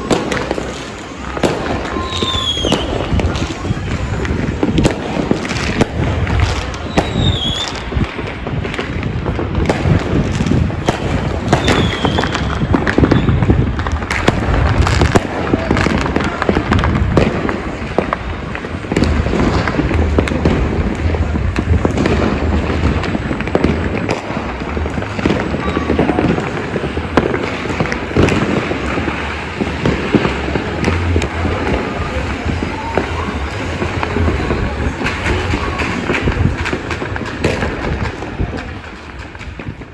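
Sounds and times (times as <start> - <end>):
firework whistles: 0.0 - 8.0, 9.6 - 16.9, 21.6 - 38.1
fireworks and firecrackers banging: 0.0 - 39.9.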